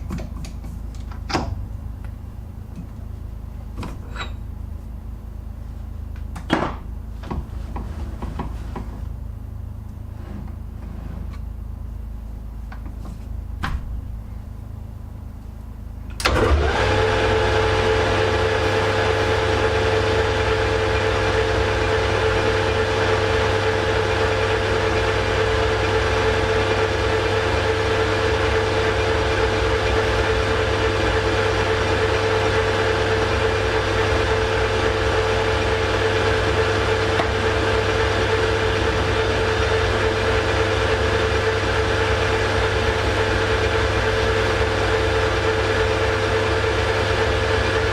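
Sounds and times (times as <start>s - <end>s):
metal lathe running with whine: 16.3s - 47.9s.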